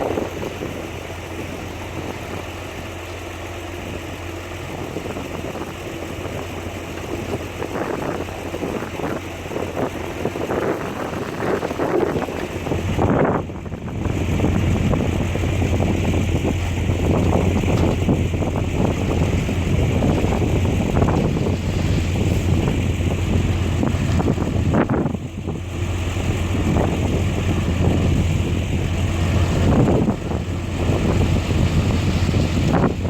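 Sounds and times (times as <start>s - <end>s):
diesel construction machinery running: 0.0s - 33.0s
rattling and scraping: 14.2s - 33.0s.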